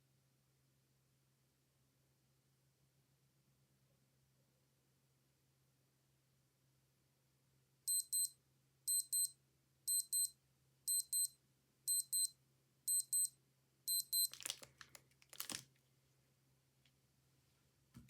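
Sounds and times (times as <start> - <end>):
digital watch alarm beeping: 7.9 - 10.3, 10.9 - 12.3, 12.9 - 13.3, 13.9 - 14.4.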